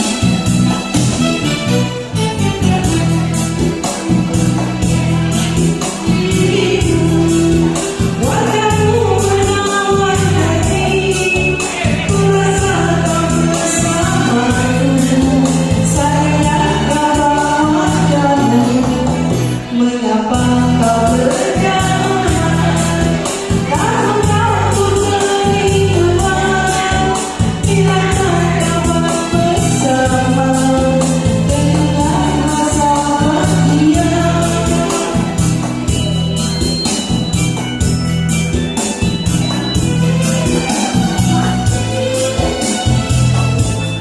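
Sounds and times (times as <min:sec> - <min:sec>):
backing track with bass and beat: 0:00.0 - 0:44.0
person singing a slow ballad: 0:05.6 - 0:36.0.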